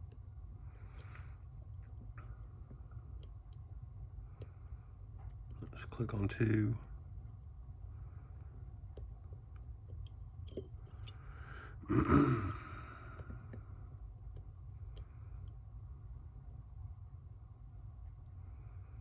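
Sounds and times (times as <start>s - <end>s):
lock picks clicking: 9.9s - 11.2s.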